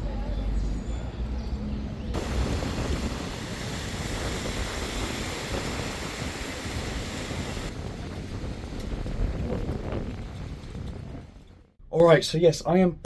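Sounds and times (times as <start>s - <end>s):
steady rushing noise: 2.2s - 11.4s.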